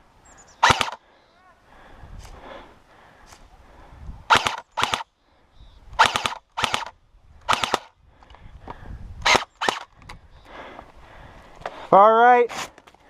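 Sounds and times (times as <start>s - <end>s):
airsoft rifle bursts: 0.6s - 1.0s, 4.3s - 5.0s, 6.0s - 6.9s, 7.5s - 7.9s.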